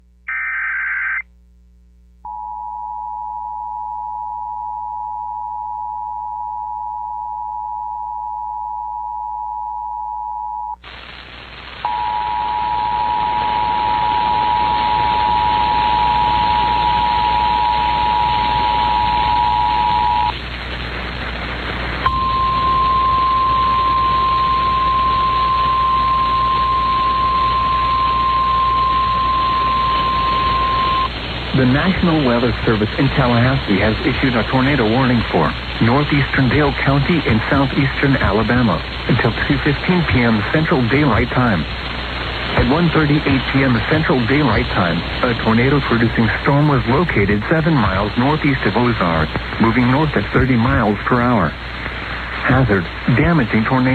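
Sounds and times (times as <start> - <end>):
radio static: 0.0 - 1.5, 10.8 - 53.9
single steady warning tone: 11.9 - 20.3, 22.1 - 31.1.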